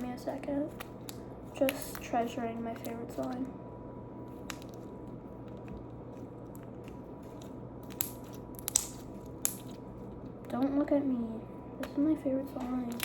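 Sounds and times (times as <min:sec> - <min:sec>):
steady low hum: 0:00.0 - 0:13.0
sharp clicks and pops: 0:06.5 - 0:09.8.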